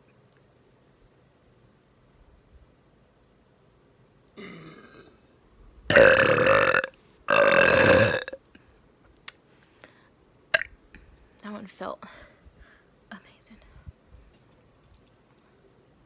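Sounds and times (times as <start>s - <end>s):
woman burping loudly: 4.4s - 5.2s, 5.9s - 8.4s.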